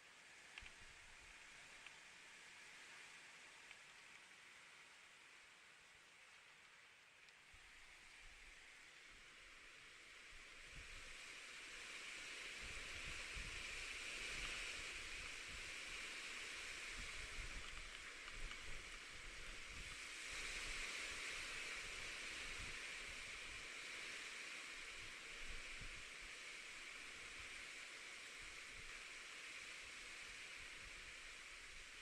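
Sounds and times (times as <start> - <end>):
rain falling: 12.7 - 32.0.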